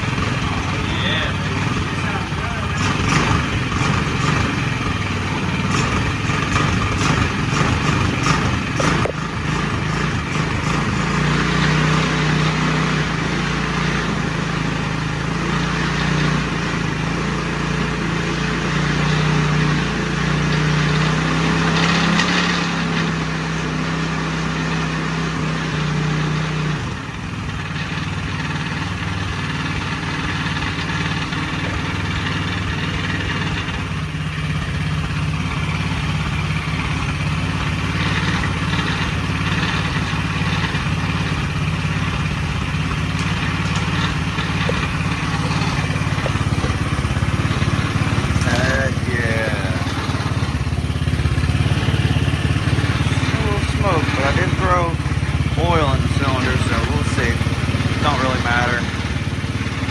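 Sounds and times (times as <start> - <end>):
engine running: 0.0 - 59.9
engine being cranked: 43.2 - 58.9.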